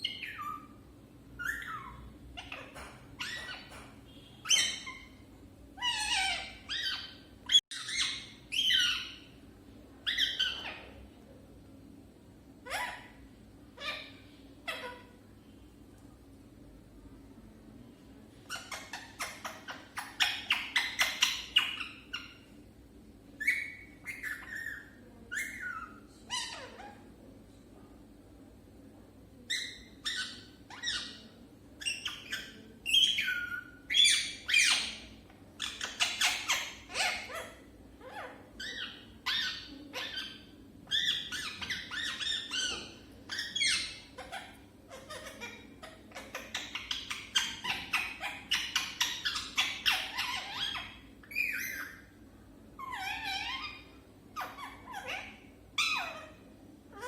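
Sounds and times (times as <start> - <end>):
parrot squawking and chirping: 0.0 - 9.4, 10.0 - 11.0, 12.6 - 13.2, 13.8 - 15.2, 18.4 - 22.6, 23.4 - 27.1, 29.5 - 57.0.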